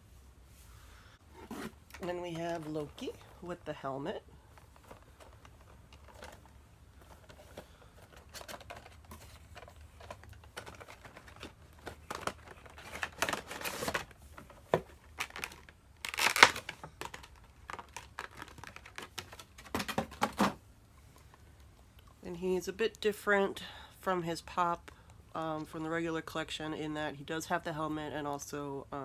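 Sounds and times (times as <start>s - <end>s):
packaging crinkling and rustling: 4.4s - 20.6s.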